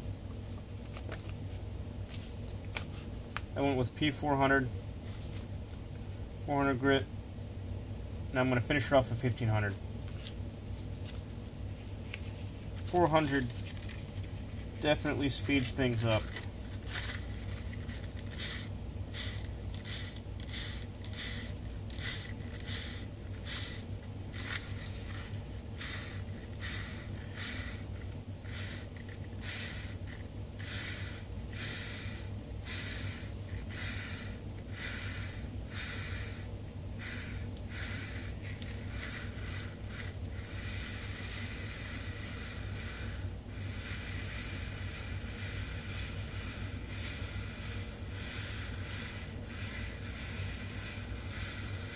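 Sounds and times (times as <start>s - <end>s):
sandpaper rasping: 37.0s - 51.9s.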